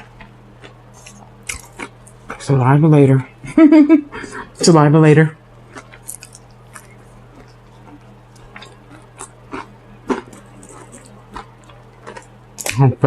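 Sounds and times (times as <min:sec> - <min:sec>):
chewing and lip-smacking: 0:00.0 - 0:02.5, 0:05.6 - 0:12.8
steady low hum: 0:00.0 - 0:13.0.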